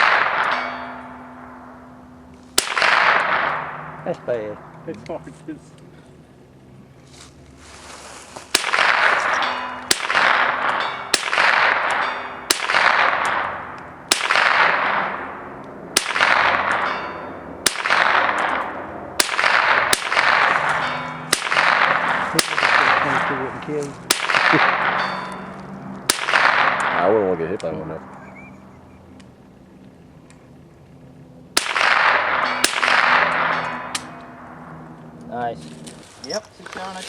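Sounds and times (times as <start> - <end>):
echoing handgun shots: 0.0 - 1.9, 2.5 - 4.8, 8.5 - 27.4, 31.5 - 34.9.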